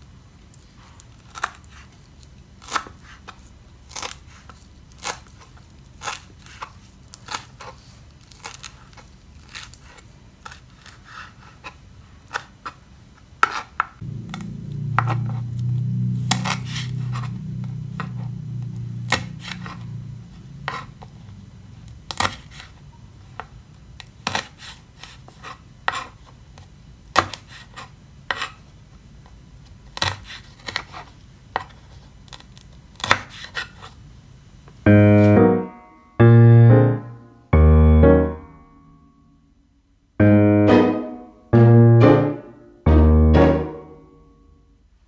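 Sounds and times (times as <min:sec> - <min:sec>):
loud background music: 0:40.2 - 0:44.0.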